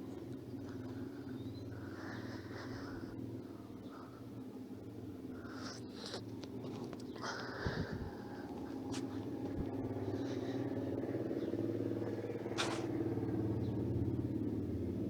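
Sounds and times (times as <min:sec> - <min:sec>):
low mechanical hum: 0:00.0 - 0:15.0
sharp click: 0:12.6 - 0:12.9.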